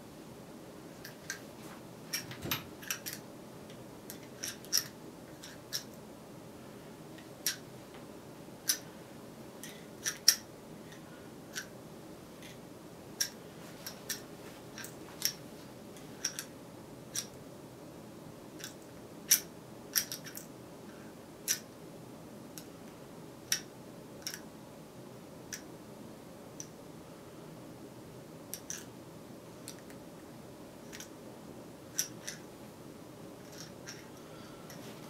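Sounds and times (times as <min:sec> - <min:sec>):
faint room hum: 0:00.0 - 0:35.0.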